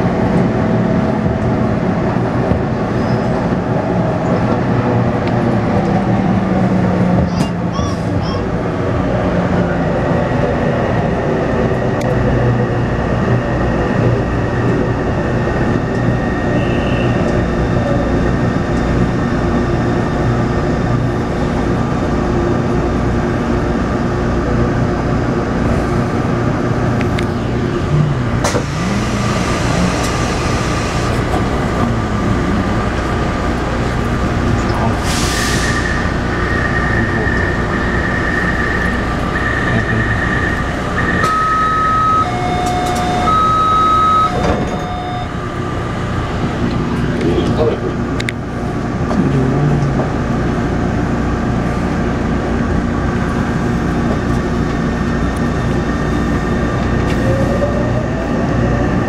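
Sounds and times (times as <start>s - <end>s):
train motors and wheels rumbling: 0.0s - 59.0s
inverter whining tones: 35.9s - 45.8s
high steady tone: 38.0s - 45.6s.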